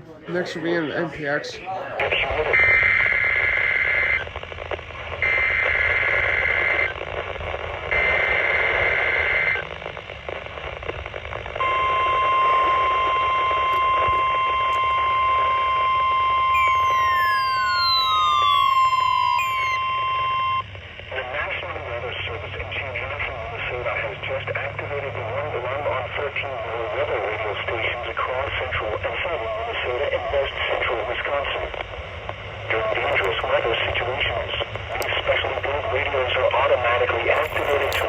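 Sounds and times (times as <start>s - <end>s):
radio static hiss: 0.0s - 38.0s
warning alarm tone: 11.6s - 20.6s
warbling digital header bursts: 16.6s - 20.4s
tone sliding down in pitch: 16.6s - 20.6s.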